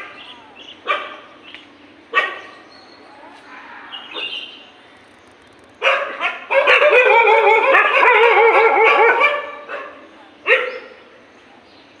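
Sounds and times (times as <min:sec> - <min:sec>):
dogs barking and yelping: 0:00.0 - 0:01.2, 0:02.1 - 0:02.6, 0:05.8 - 0:11.0.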